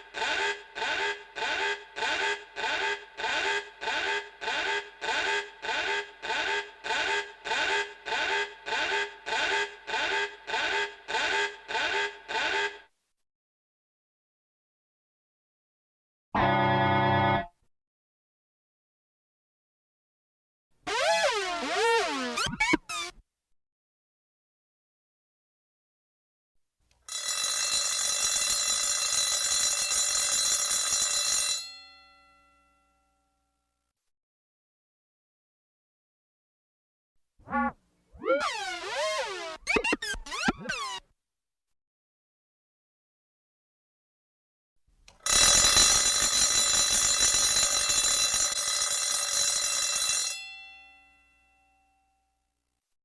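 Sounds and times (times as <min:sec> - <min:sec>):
alarm bell ringing: 0:45.3 - 0:51.9.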